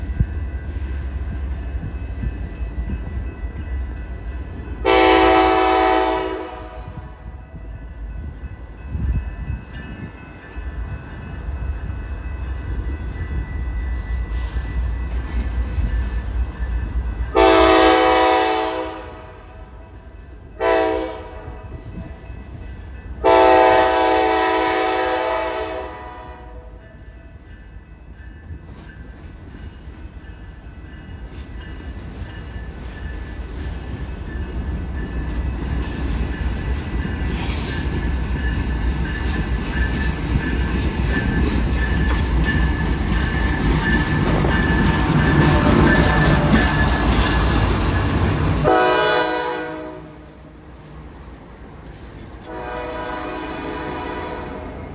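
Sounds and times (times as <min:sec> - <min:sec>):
train rumble: 0:00.0 - 0:54.9
locomotive air horn: 0:04.8 - 0:07.2, 0:17.4 - 0:19.5, 0:20.6 - 0:21.7, 0:23.2 - 0:26.7, 0:48.6 - 0:50.5, 0:52.5 - 0:54.9.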